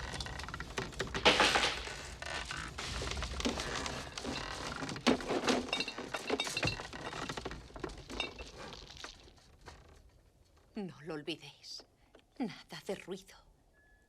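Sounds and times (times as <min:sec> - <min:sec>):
wood knocking and cracking: 0:00.0 - 0:09.9.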